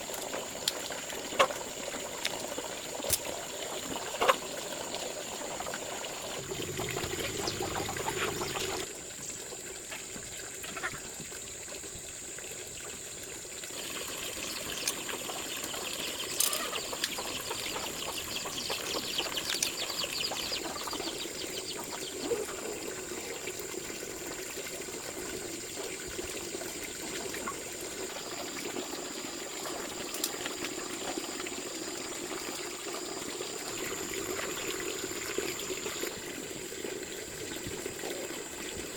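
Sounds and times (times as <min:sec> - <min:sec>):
water trickling and splashing: 0:00.0 - 0:38.9.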